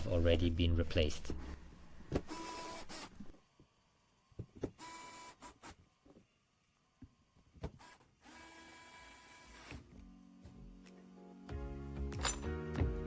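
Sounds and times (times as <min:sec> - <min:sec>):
electric screwdriver whirring: 0:02.3 - 0:03.2, 0:04.7 - 0:05.8, 0:07.7 - 0:10.0.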